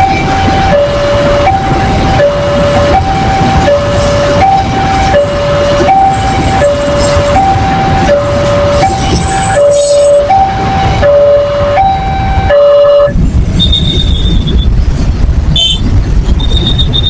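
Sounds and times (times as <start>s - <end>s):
level crossing two-tone alarm: 0.0s - 13.2s
low rumble: 0.0s - 17.0s.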